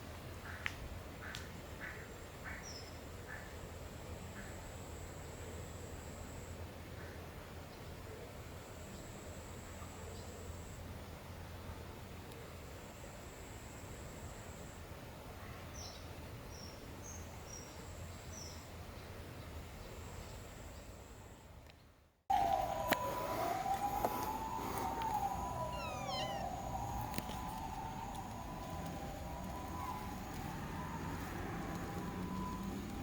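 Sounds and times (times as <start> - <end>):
siren wailing: 22.3 - 33.0
high bird chirps: 25.4 - 27.8.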